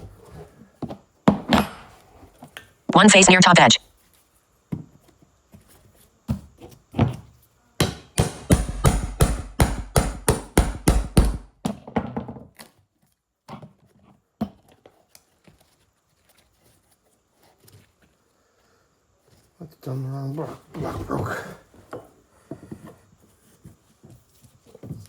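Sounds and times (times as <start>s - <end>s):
hammering on wooden framing: 7.8s - 11.5s.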